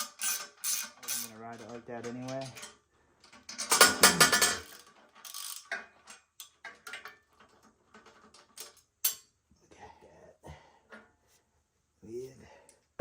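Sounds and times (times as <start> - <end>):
loose metal parts clattering: 0.0 - 9.3
small clinks of tools handled: 0.0 - 9.3.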